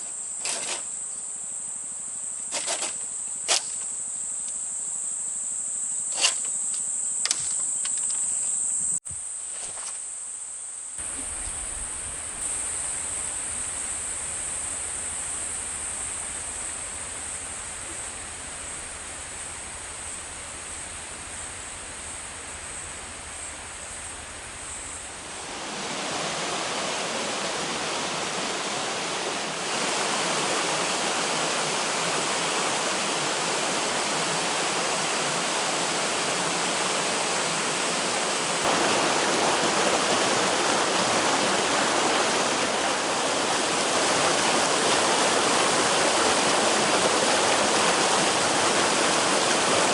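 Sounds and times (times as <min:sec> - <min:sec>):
insects chirring: 0:00.0 - 0:49.9
steady rushing noise: 0:11.0 - 0:49.9.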